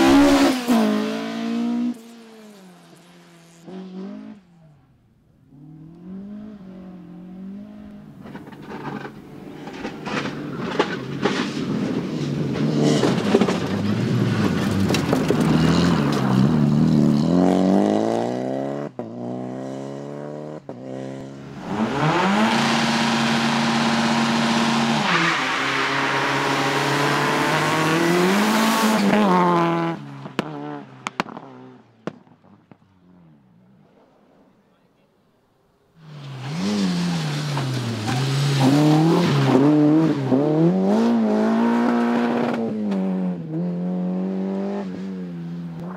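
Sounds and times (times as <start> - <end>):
rally car engine revving: 0.0 - 4.5, 5.5 - 31.9, 36.0 - 45.9.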